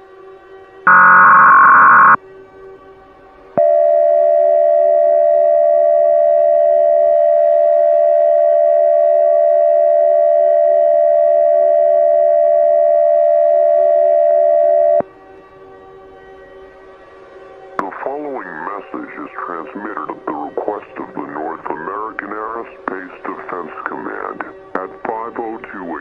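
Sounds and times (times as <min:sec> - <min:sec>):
faint steady hum: 0:00.9 - 0:02.2
two-tone alarm signal: 0:00.9 - 0:02.2.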